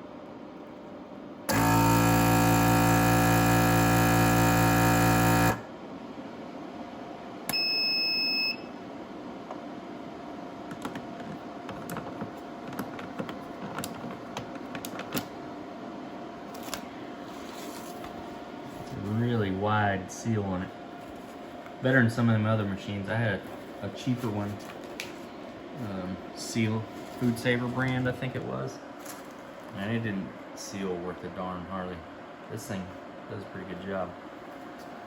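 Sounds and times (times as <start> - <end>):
vacuum sealer pump humming: 1.4 - 6.2
high beep: 7.5 - 8.7.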